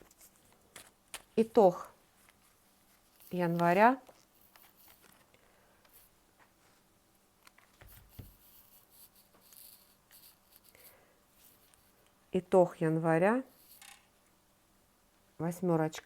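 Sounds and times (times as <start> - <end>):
faint rustles: 2.0 - 6.9.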